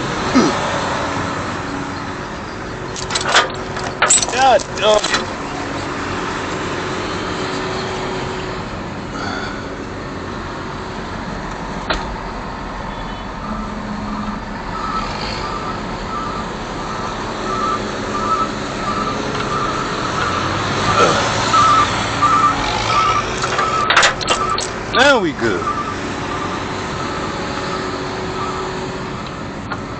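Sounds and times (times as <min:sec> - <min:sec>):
diesel engine running: 0:00.0 - 0:29.9
backup alarm beeping: 0:12.9 - 0:28.6.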